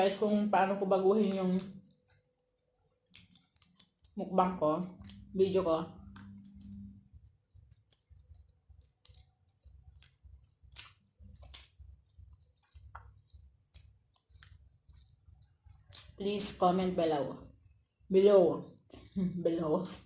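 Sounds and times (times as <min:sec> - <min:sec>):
mouth clicks and chewing: 0:02.9 - 0:04.2, 0:07.5 - 0:16.2
low background rumble: 0:04.2 - 0:08.9.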